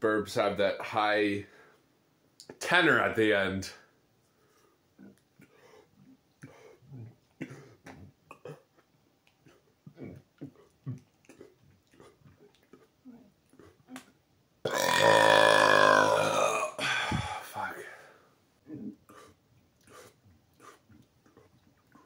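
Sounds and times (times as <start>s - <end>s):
loud belch: 8.3s - 8.6s, 14.7s - 16.8s
man gulping softly: 14.7s - 17.6s.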